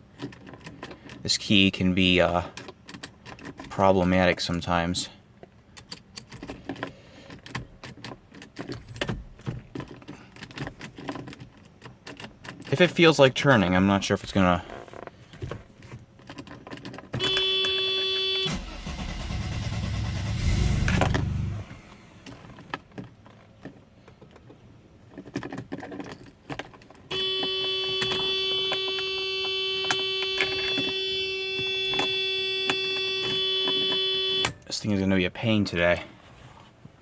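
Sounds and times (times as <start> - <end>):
dashboard warning buzzer: 17.2 - 20.6, 27.1 - 34.6
starter cranking engine: 18.5 - 22.6.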